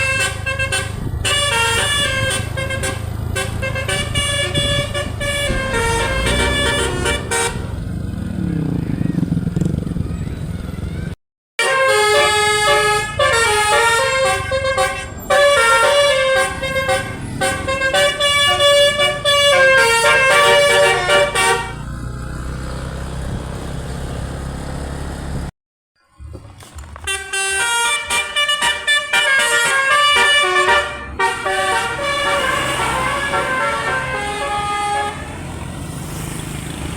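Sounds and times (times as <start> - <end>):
musical air horn tune: 0.0 - 7.8, 11.6 - 21.8, 27.0 - 35.5.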